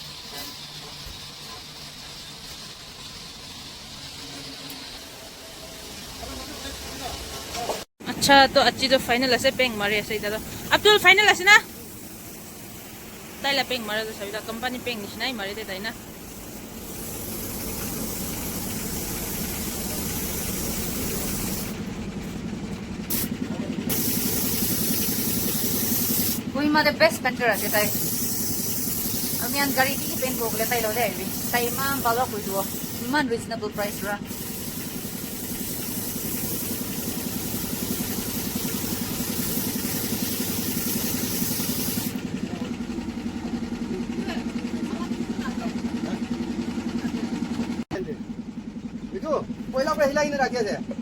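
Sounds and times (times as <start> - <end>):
motor running with low throb: 0.0 - 51.0
steady low hum: 8.0 - 51.0
paint spray gun hissing: 9.1 - 21.9, 23.0 - 42.4.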